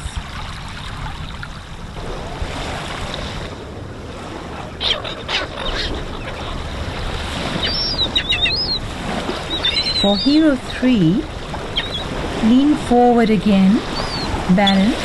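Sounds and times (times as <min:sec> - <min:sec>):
flowing water rushing: 0:00.0 - 0:15.0.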